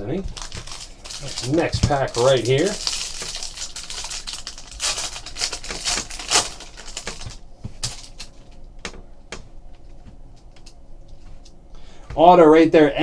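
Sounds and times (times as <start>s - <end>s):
card pack wrapper crinkling: 0.2s - 8.6s.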